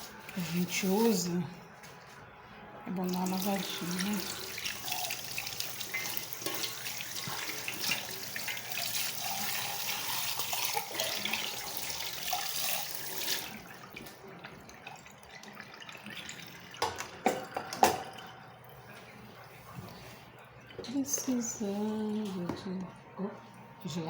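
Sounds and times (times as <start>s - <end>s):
kitchen tap running: 3.0s - 19.2s.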